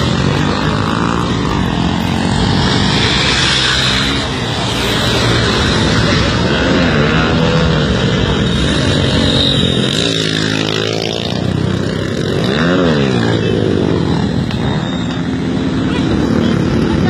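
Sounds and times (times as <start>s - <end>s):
motorcycle engine revving: 0.0s - 17.0s.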